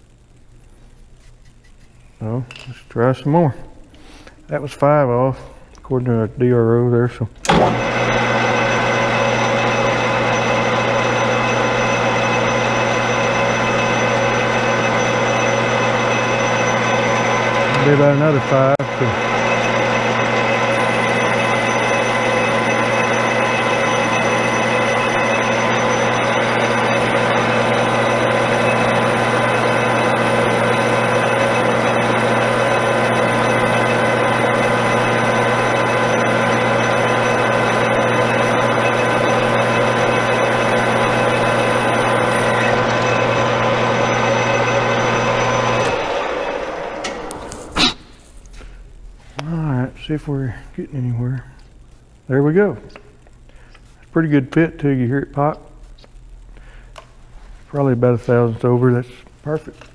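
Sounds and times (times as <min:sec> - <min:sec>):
metal lathe running: 0:07.4 - 0:48.6.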